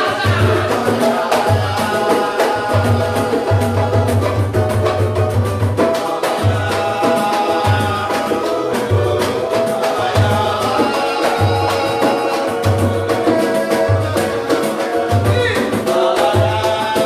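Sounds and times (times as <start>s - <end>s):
samba band music: 0.0s - 17.0s.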